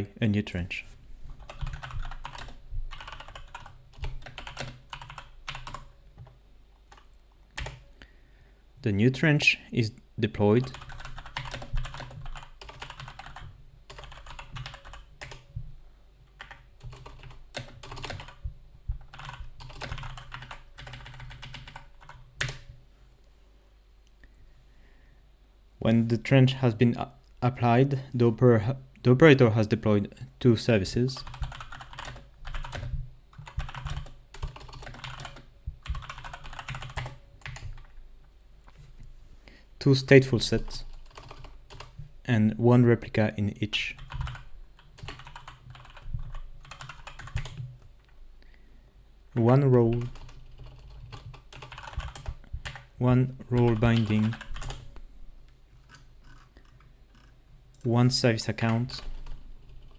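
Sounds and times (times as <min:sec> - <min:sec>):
faint low hum: 0:00.0 - 0:59.9
typing on computer keyboard: 0:01.4 - 0:07.9, 0:10.6 - 0:15.5, 0:16.4 - 0:18.4, 0:19.0 - 0:22.7, 0:31.2 - 0:37.9, 0:40.8 - 0:42.0, 0:44.0 - 0:47.8, 0:50.0 - 0:52.9, 0:53.6 - 0:54.9, 0:55.9 - 0:57.3, 0:58.6 - 0:59.9.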